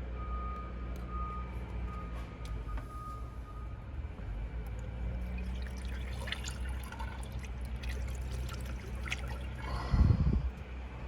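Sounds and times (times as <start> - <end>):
steady low hum: 5.1 - 11.0
small liquid splashes: 5.2 - 9.8
liquid pouring from a bottle: 5.2 - 10.0.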